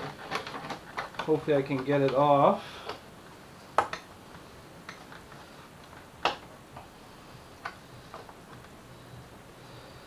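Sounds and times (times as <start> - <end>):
plastic cowling clicking and knocking: 0.0 - 3.0.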